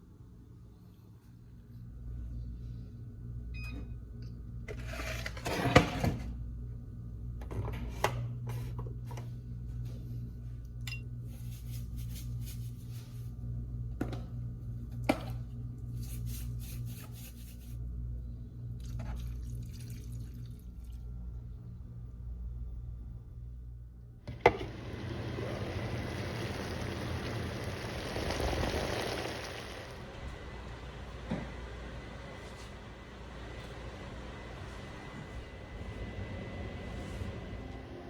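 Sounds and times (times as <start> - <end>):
steady low hum: 0.0 - 4.8, 6.1 - 38.0
pouring water splashing: 24.8 - 30.0.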